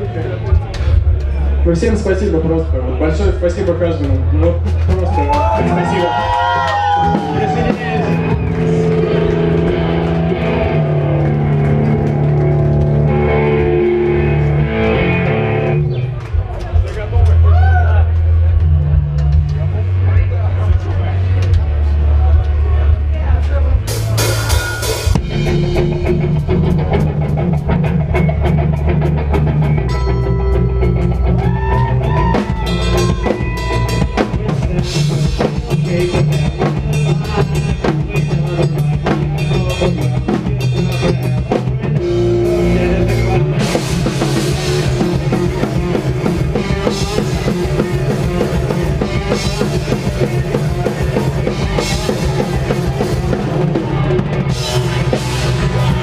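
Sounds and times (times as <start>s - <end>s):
metal band playing live: 0.0s - 56.0s
drum kit fast beat: 4.1s - 13.5s, 23.8s - 29.8s, 30.9s - 56.0s.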